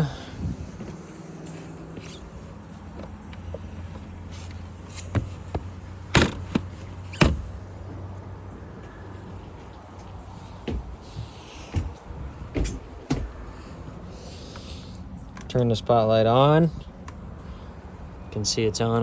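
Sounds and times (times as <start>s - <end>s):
steady low hum: 0.0s - 18.8s
sharp knocks and clunks: 5.0s - 7.5s, 10.6s - 13.4s.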